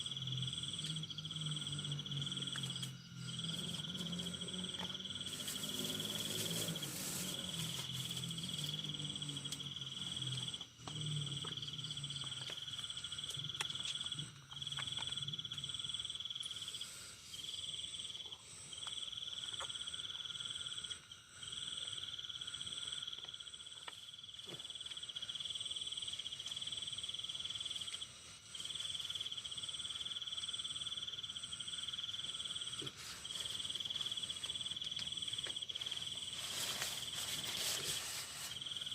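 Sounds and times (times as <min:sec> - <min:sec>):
crickets trilling: 0:00.0 - 0:38.9.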